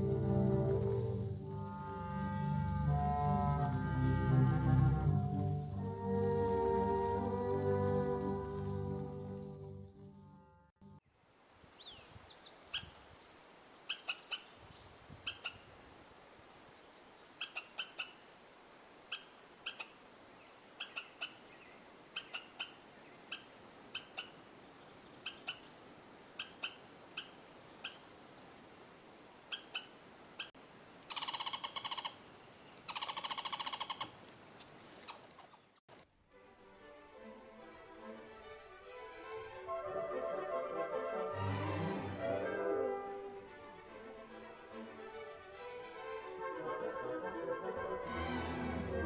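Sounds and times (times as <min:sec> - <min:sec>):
squirrel buzzy chattering trills: 0:13.8 - 0:14.5, 0:15.2 - 0:15.7, 0:17.4 - 0:18.2, 0:19.1 - 0:20.0, 0:20.8 - 0:24.4, 0:25.2 - 0:25.7, 0:26.4 - 0:28.1, 0:29.5 - 0:30.5, 0:31.1 - 0:32.2, 0:32.8 - 0:34.2
squirrel alarm chips: 0:29.5 - 0:30.5, 0:31.1 - 0:32.2, 0:32.9 - 0:34.2.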